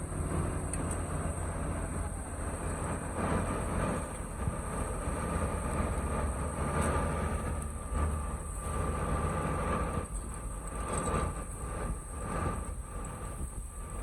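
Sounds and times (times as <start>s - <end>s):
heavy machinery engine rumble: 0.0s - 14.0s.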